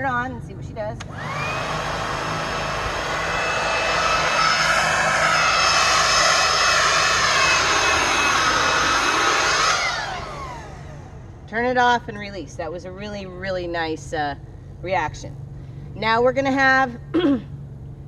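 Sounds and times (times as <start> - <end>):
leaf blower whining: 1.0 - 11.6.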